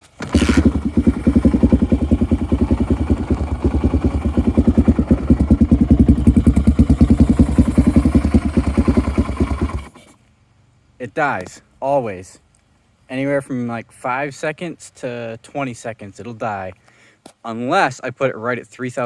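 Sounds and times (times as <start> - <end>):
motorcycle engine idling: 0.1 - 10.0.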